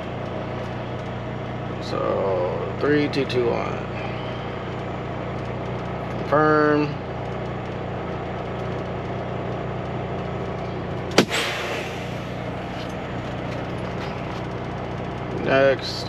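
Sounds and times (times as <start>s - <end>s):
diesel truck idling: 0.0s - 16.0s
sharp click: 11.1s - 12.0s
short air hiss: 11.2s - 12.5s.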